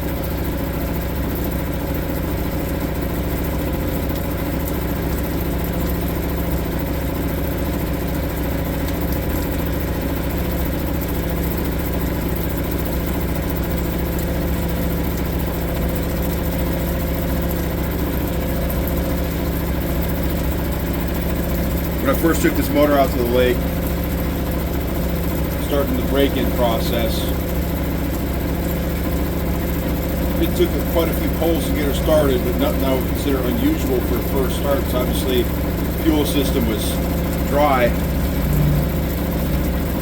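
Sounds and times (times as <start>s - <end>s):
outboard motor idling: 0.0s - 40.0s.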